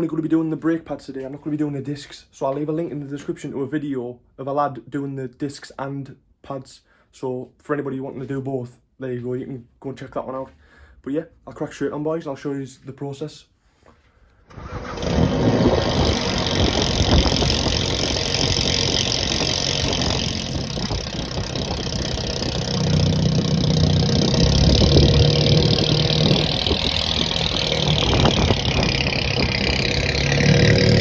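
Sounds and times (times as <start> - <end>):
car engine running: 14.5 - 31.0.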